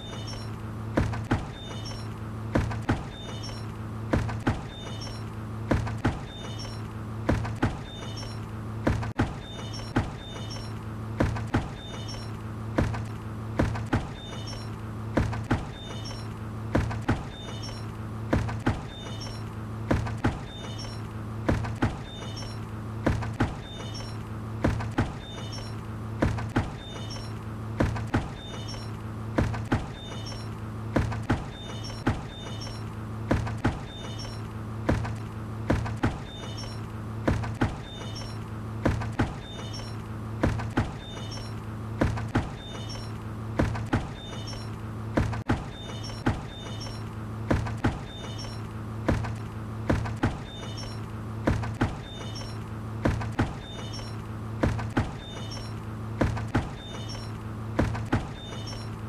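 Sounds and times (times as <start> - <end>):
high squeak: 0.0 - 0.6, 1.5 - 2.1, 3.1 - 3.7, 4.7 - 5.3, 6.2 - 6.9, 7.8 - 8.4, 9.4 - 10.8, 11.8 - 12.4, 14.2 - 14.8, 15.7 - 16.3, 17.3 - 17.9, 18.9 - 19.5, 20.4 - 21.1, 22.0 - 22.6, 23.6 - 24.2, 25.2 - 25.8, 26.8 - 27.4, 28.3 - 29.0, 29.9 - 30.6, 31.5 - 32.9, 33.8 - 34.5, 36.2 - 36.9, 37.8 - 38.4, 39.4 - 40.0, 41.0 - 41.6, 42.6 - 43.2, 44.1 - 44.8, 45.7 - 47.1, 48.0 - 48.7, 50.4 - 51.1, 52.0 - 52.6, 53.6 - 54.2, 55.2 - 55.8, 56.8 - 57.4, 58.3 - 59.0
steady low hum: 0.0 - 59.0.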